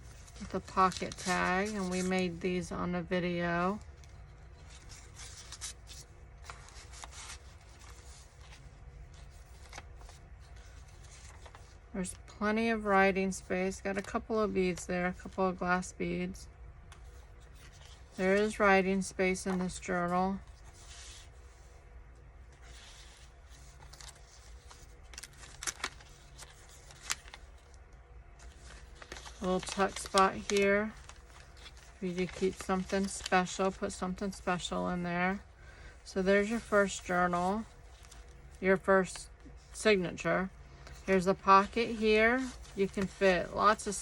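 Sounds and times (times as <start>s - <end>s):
paper rustling and sliding: 0.0s - 2.4s, 4.0s - 11.8s, 20.4s - 21.8s, 22.5s - 27.8s, 28.4s - 34.4s, 40.8s - 44.0s.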